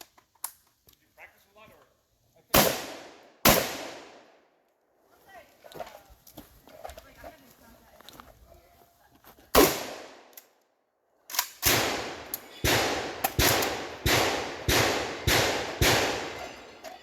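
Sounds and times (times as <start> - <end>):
shotgun shots: 2.5 - 4.3, 9.6 - 10.3, 11.6 - 16.8.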